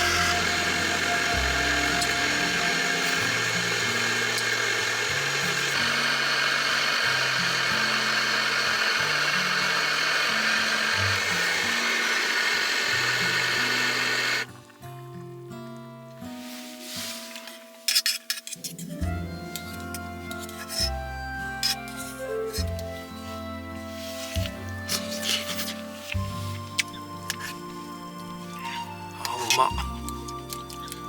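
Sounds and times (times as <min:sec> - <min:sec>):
loud rushing hiss: 0:00.0 - 0:14.4.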